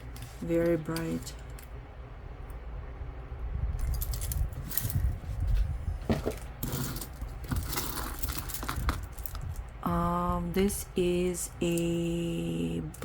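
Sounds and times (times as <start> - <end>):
metal jewelry clinking: 3.8 - 5.2, 6.3 - 9.7.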